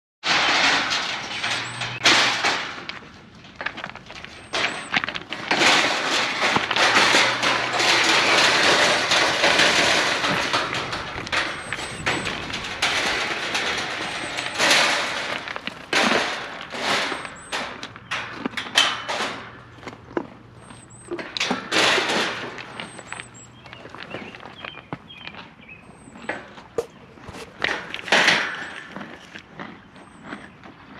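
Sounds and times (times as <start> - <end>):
animals scuffling and rustling: 20.6 - 30.4.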